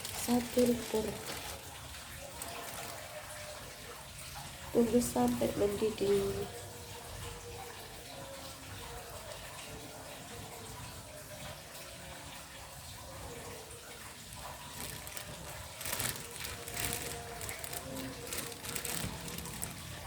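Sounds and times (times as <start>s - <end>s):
water heating in a pot: 0.0s - 20.0s.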